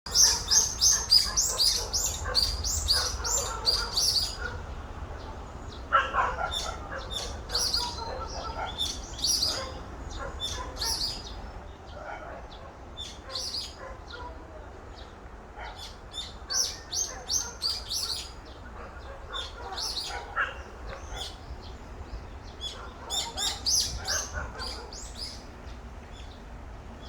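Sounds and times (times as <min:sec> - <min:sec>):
dog barking: 0:00.1 - 0:04.7, 0:05.9 - 0:11.2, 0:12.0 - 0:14.6, 0:15.5 - 0:21.4, 0:22.7 - 0:25.1
songbirds chirping: 0:00.1 - 0:27.0.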